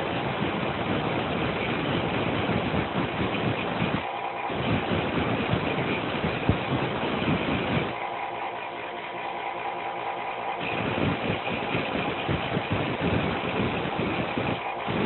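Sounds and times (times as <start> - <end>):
small power tool motor running: 2.0 - 15.0.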